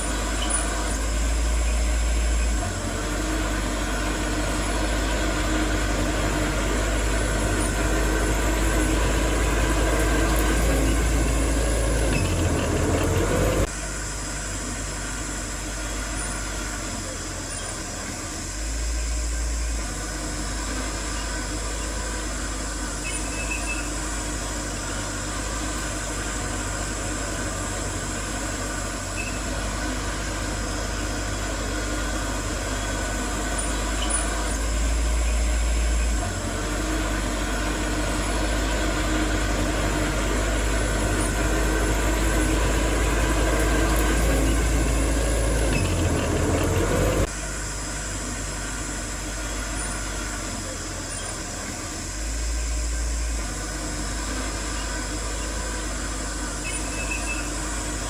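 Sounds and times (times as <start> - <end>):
diesel machinery engine drone: 0.0 - 58.0.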